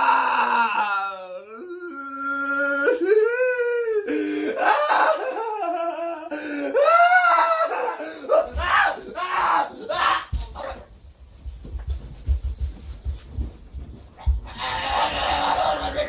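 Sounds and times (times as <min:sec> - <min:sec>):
man wailing and crying: 0:00.0 - 0:10.8, 0:14.5 - 0:16.0.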